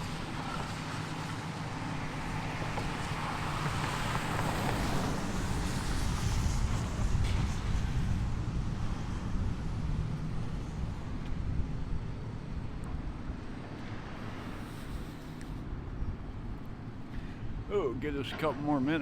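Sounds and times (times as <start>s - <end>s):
wind on microphone: 2.5s - 13.4s.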